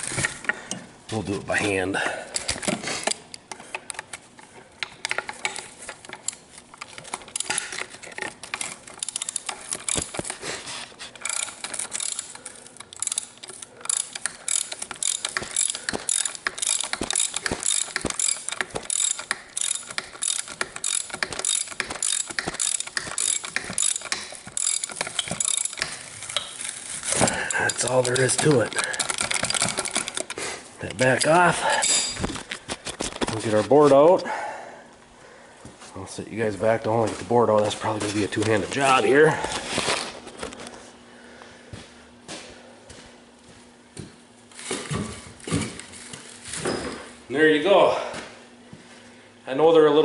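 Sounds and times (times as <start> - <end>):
hand ratchet clicking: 4.8 - 10.4, 11.2 - 30.4.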